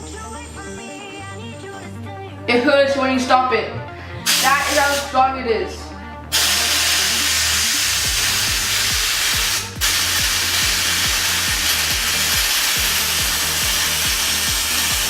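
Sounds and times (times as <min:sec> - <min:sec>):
compressed air spraying hiss: 0:04.3 - 0:05.1, 0:06.3 - 0:15.0
music with deep beat: 0:06.2 - 0:15.0.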